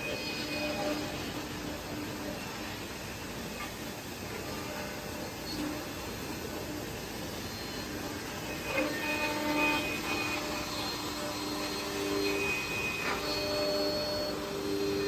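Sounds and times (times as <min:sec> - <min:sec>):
cnc machine running: 0:00.0 - 0:15.0
whining spindle tones: 0:07.4 - 0:15.0.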